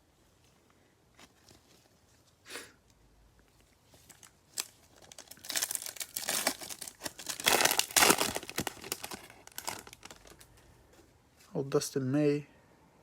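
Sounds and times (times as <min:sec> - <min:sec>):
foil wrapper tearing and crinkling: 0:04.1 - 0:10.5.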